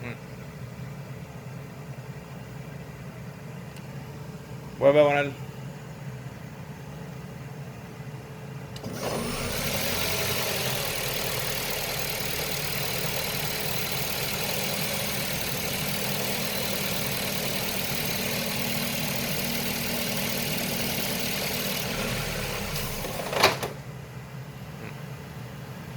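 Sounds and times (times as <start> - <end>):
car engine running with hissing whir: 8.8 - 25.9.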